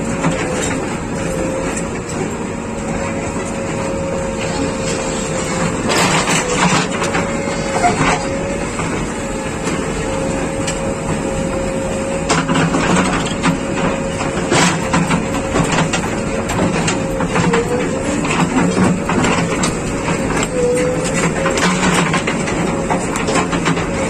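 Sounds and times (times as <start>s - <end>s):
diesel engine running: 0.0s - 24.0s.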